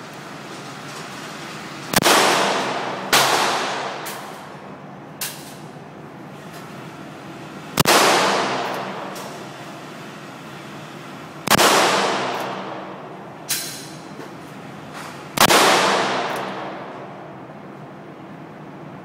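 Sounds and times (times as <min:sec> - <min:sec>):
revolver shots echoing: 0:02.0 - 0:04.7, 0:07.8 - 0:09.6, 0:11.4 - 0:14.0, 0:15.3 - 0:17.2.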